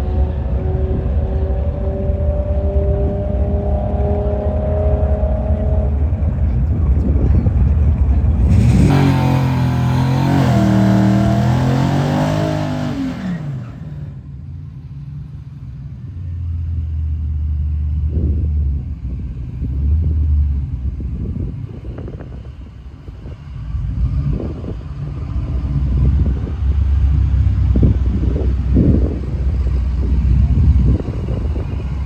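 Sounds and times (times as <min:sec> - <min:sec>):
low steady engine rumble: 0:00.0 - 0:32.0
car engine revving hard: 0:08.4 - 0:14.2.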